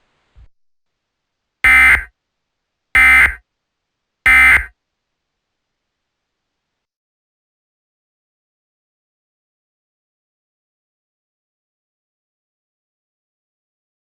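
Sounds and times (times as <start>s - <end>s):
digital data tone bursts: 1.7s - 2.1s, 3.0s - 3.4s, 4.3s - 4.7s.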